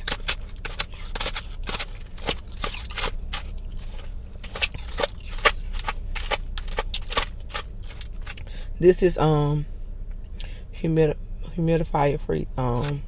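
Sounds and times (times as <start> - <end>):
person chewing crunchy ice: 0.0 - 8.5.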